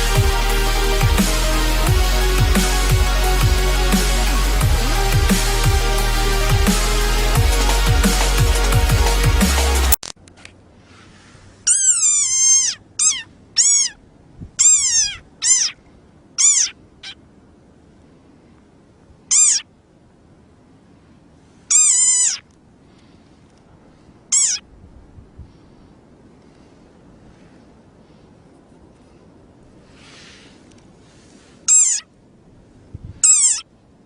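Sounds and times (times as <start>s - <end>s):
frog giving high squeaky calls: 11.6s - 14.0s, 14.6s - 15.8s, 16.4s - 17.2s, 19.3s - 19.7s, 21.7s - 22.5s, 24.3s - 24.7s, 31.7s - 32.1s, 33.2s - 33.7s.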